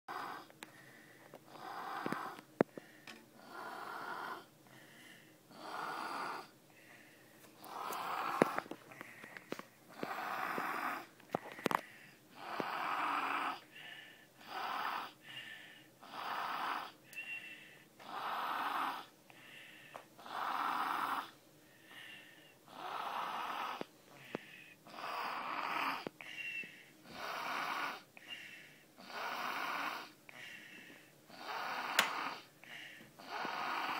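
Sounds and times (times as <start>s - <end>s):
baby snoring: 0.1s - 0.6s, 1.5s - 2.5s, 3.4s - 4.5s, 5.5s - 6.6s, 7.6s - 8.8s, 9.9s - 13.7s, 14.4s - 15.3s, 16.0s - 17.0s, 18.0s - 19.1s, 20.2s - 21.4s, 22.1s - 28.1s, 29.0s - 30.6s, 31.3s - 32.6s, 33.2s - 33.9s.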